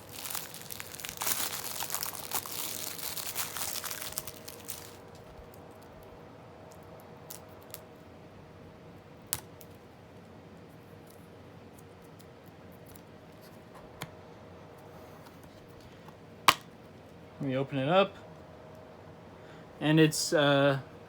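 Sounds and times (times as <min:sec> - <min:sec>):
faint scratching of shrink-wrap: 0:00.0 - 0:05.8.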